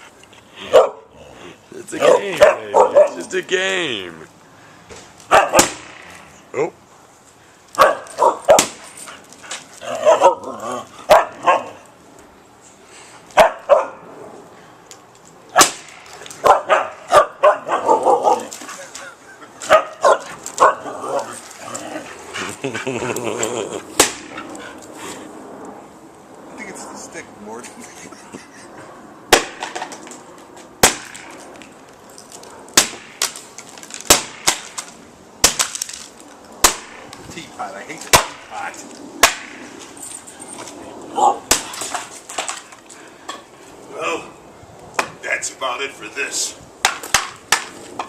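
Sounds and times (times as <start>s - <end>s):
dog barking: 0.7s - 1.1s, 2.0s - 3.2s, 5.3s - 5.6s, 7.8s - 8.7s, 9.9s - 10.4s, 11.1s - 11.8s, 13.4s - 14.0s, 16.4s - 18.5s, 19.7s - 21.3s, 41.2s - 41.4s
stick whacking hard objects: 5.6s - 6.2s, 8.5s - 8.9s, 15.6s - 16.4s, 24.0s - 24.4s, 29.3s - 30.0s, 30.8s - 31.4s, 32.7s - 36.0s, 36.6s - 37.1s, 38.0s - 38.5s, 39.2s - 39.6s, 41.4s - 42.6s, 46.8s - 48.0s.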